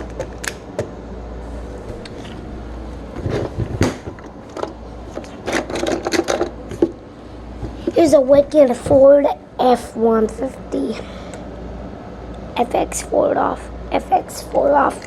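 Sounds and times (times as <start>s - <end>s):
steady low hum: 0.0s - 15.0s
toy vehicles clicking and knocking: 4.6s - 6.9s.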